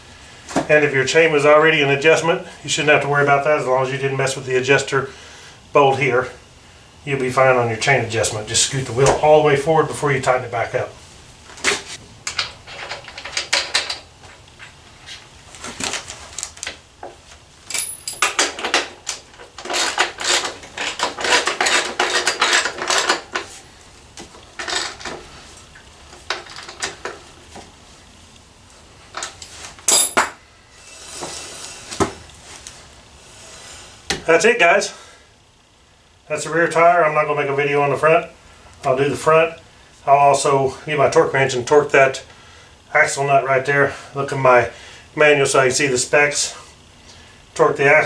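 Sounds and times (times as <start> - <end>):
metal tools clicking: 17.7 - 23.2.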